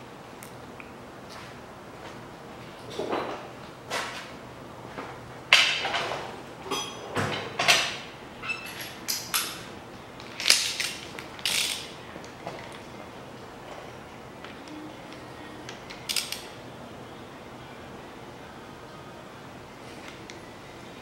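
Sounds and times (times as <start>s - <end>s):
hand tools clicking on metal: 10.4s - 12.4s, 15.7s - 16.5s.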